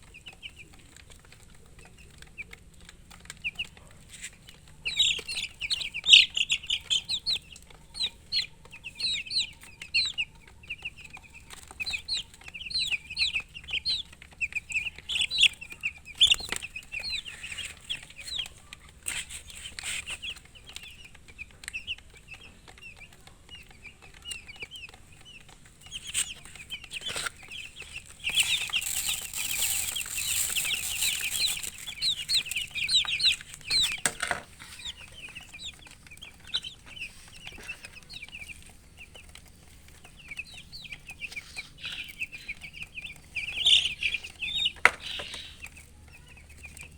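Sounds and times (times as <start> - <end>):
baby chicks peeping: 0.0 - 46.9
rustling noise: 19.0 - 20.4, 25.9 - 36.0.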